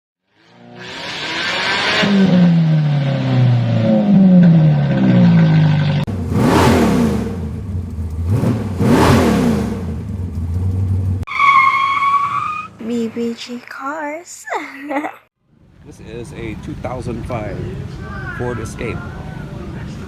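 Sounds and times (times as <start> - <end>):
car engine revving: 0.3 - 13.0
cars passing by fast: 0.3 - 13.3.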